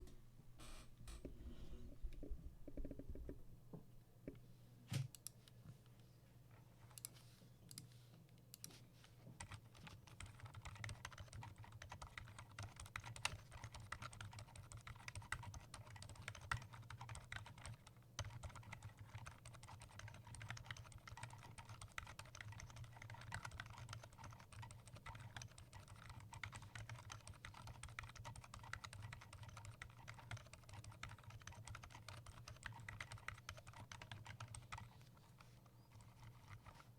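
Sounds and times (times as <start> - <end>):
typing on mechanical keyboard: 9.4 - 36.9.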